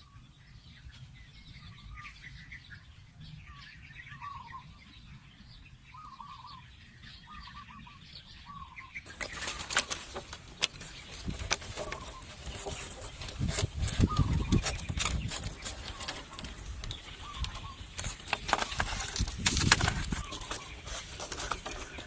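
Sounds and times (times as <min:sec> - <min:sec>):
bird chirping: 0:00.0 - 0:22.0
knocking clicking and scraping: 0:09.1 - 0:22.0.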